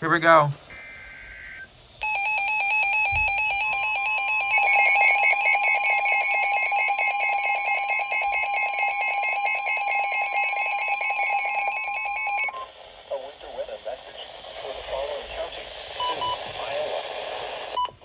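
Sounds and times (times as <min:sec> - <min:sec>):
pulsing electronic alarm tone: 0:00.7 - 0:12.7.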